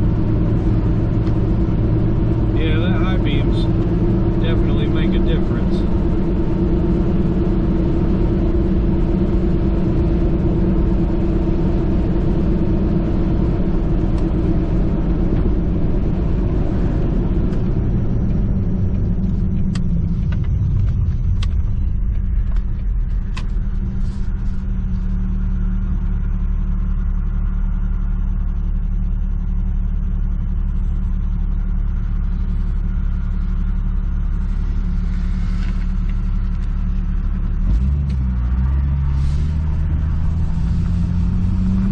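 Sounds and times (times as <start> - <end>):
car engine running: 0.0 - 41.9
road noise inside car: 0.0 - 41.9.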